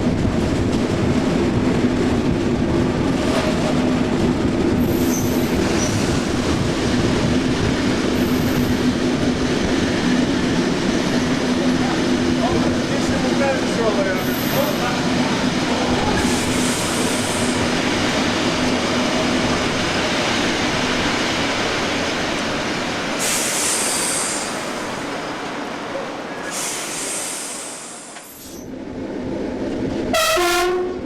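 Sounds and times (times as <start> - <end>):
train rumbling on rails: 0.0 - 31.0
train horn: 30.1 - 31.0.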